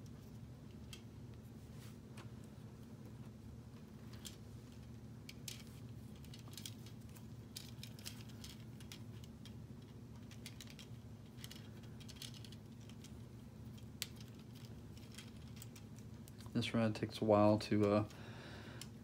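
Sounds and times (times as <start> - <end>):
steady low hum: 0.0 - 19.0
plastic pieces clicking and rattling: 4.1 - 16.5.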